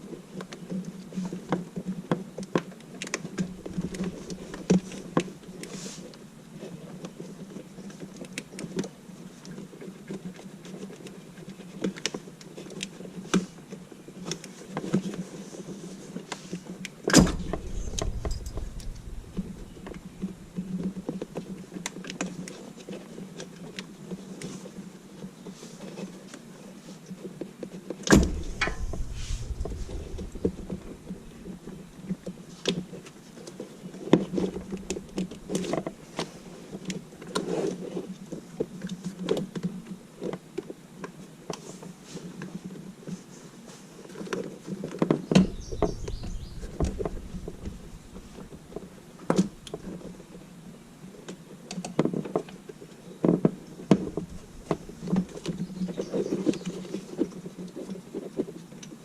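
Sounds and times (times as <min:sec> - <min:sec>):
sharp loud knocks: 0:17.1 - 0:20.6, 0:28.1 - 0:31.6, 0:45.4 - 0:48.8
short low rumble: 0:17.1 - 0:21.0, 0:28.1 - 0:32.0, 0:34.4 - 0:35.8, 0:45.4 - 0:49.9, 0:54.0 - 0:55.5
steady low hum: 0:17.1 - 0:21.4, 0:28.1 - 0:32.2, 0:34.3 - 0:36.0, 0:45.4 - 0:50.0, 0:54.0 - 0:55.6.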